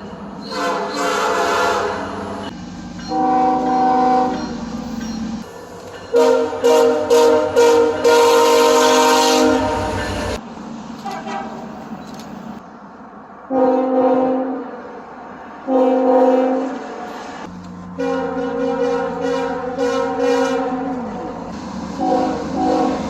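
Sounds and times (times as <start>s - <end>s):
train air horn blasts: 0.4s - 2.5s, 3.1s - 4.4s, 6.1s - 10.4s, 11.0s - 11.6s, 13.5s - 14.8s, 15.6s - 17.0s, 18.0s - 21.3s, 22.0s - 23.0s.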